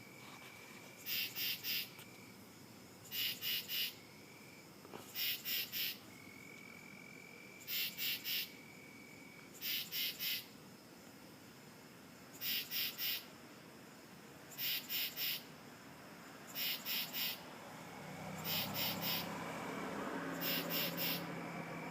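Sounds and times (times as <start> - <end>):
harsh high-pitched animal chirps: 12.4 - 13.2, 14.6 - 15.4, 16.6 - 17.4, 18.4 - 19.3, 20.4 - 21.2.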